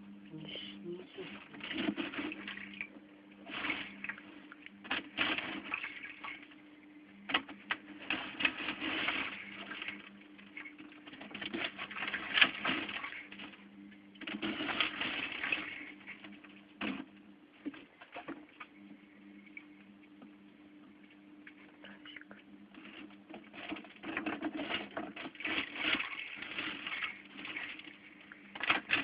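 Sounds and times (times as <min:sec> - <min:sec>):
steady low hum: 0:00.0 - 0:29.0
aquarium water splashing: 0:00.3 - 0:22.0, 0:22.6 - 0:29.0.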